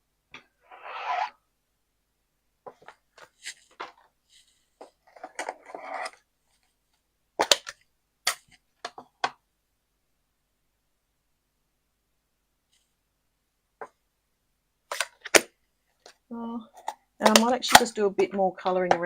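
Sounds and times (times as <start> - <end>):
clicks and taps of supplies: 16.8 - 19.0.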